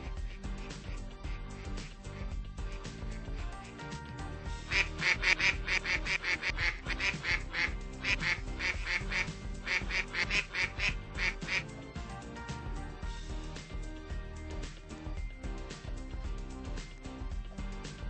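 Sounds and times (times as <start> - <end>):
background music: 0.0 - 18.0
duck quacking rapidly: 4.6 - 11.7.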